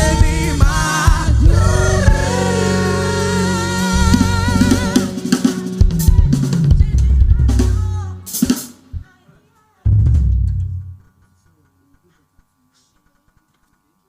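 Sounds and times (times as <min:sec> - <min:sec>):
deep bass notes: 0:00.0 - 0:08.2, 0:09.9 - 0:11.0
drum kit fill: 0:00.0 - 0:09.2, 0:09.9 - 0:11.1.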